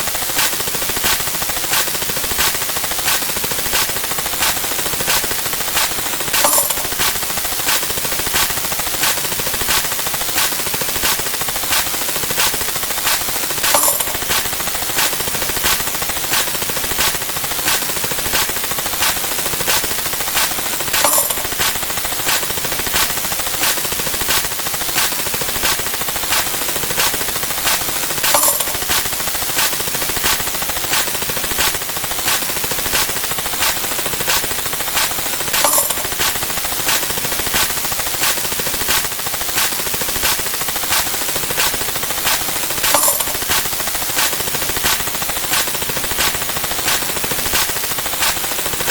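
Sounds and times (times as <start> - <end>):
sharp clicks: 3.1 - 9.3, 10.4 - 23.9, 27.7 - 38.4, 39.6 - 48.4
hit with ringing tone: 6.4 - 7.0, 13.7 - 14.4, 21.0 - 21.7, 28.2 - 28.9, 35.6 - 36.4, 42.8 - 43.5.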